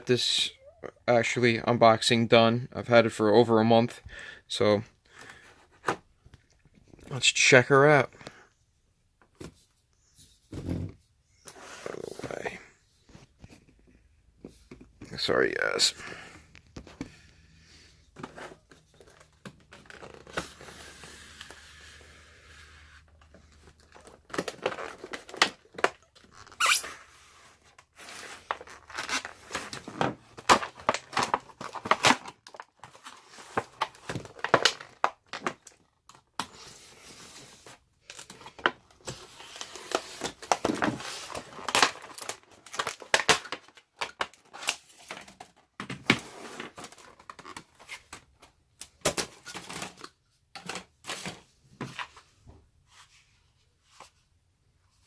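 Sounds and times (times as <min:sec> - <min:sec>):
plastic packaging tearing and crinkling: 0:23.6 - 0:27.0, 0:28.0 - 0:35.8, 0:38.0 - 0:45.4.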